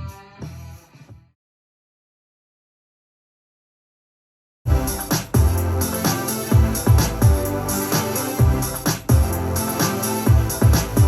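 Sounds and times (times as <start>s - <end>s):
electronic dance music: 4.7s - 11.0s.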